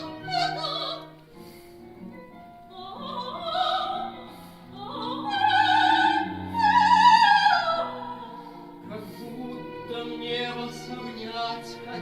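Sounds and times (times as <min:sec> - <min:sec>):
operatic singing: 0:02.7 - 0:12.0
orchestral accompaniment: 0:04.3 - 0:12.0.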